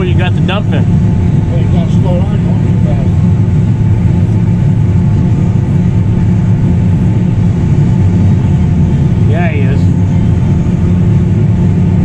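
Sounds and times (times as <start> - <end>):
combine harvester drone: 0.0 - 12.0.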